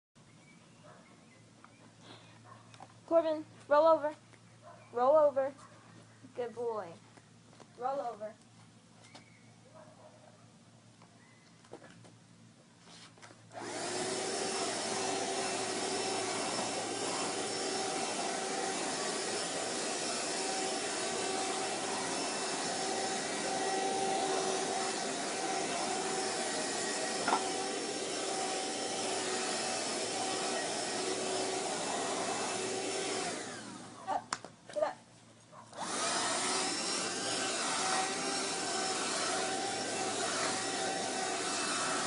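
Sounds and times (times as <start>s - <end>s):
vacuum cleaner running: 13.5s - 34.0s, 35.8s - 42.0s.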